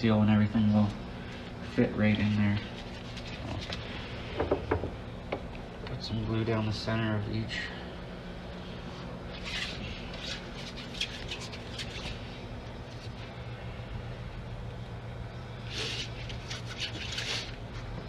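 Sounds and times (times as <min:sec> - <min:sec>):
steady low hum: 0:00.0 - 0:18.0
scratchy rustling and handling noise: 0:01.5 - 0:04.0, 0:09.4 - 0:13.2, 0:15.6 - 0:17.7.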